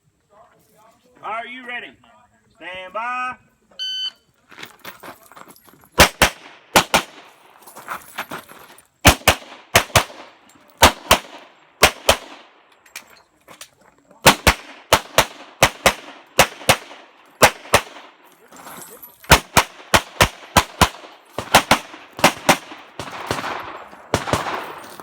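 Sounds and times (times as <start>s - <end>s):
handgun shots: 9.1s - 12.4s, 14.2s - 18.2s, 19.3s - 25.0s.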